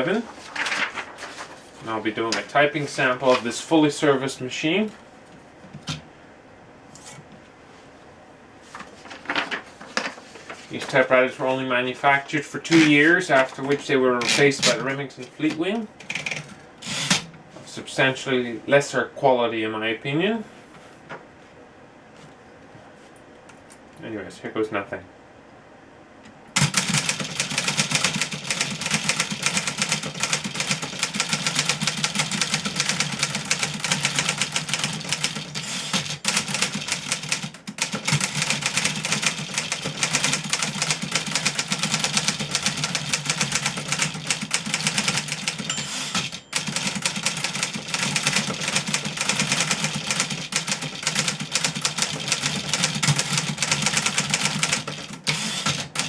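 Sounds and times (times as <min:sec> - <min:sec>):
manual typewriter fast typing: 0:26.6 - 0:56.0.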